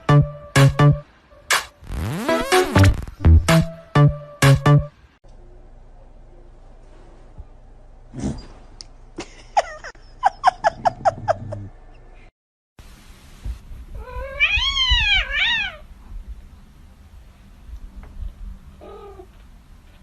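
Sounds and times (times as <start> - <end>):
cat meowing: 14.0 - 15.8.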